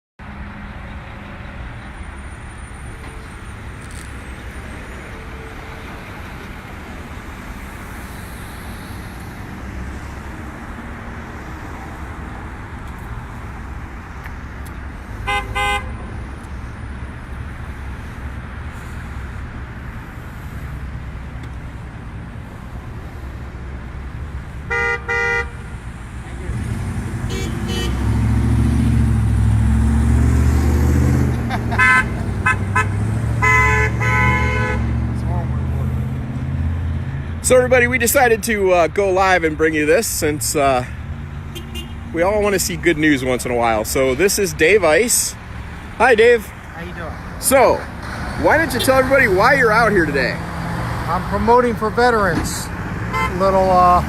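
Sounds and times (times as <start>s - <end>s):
road traffic passing: 0.2s - 54.0s
car horns honking: 15.2s - 16.2s, 24.6s - 25.8s, 27.2s - 28.2s, 31.5s - 35.1s, 41.5s - 42.1s, 48.4s - 49.8s, 53.1s - 53.9s.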